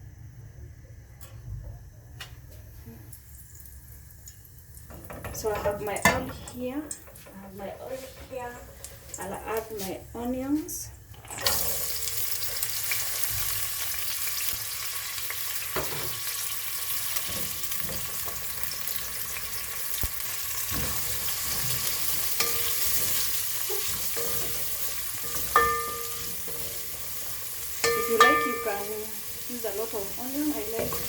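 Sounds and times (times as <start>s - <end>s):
onions sizzling in oil: 7.9s - 31.0s
spoon knocking against pot: 25.2s - 26.7s, 27.8s - 29.0s.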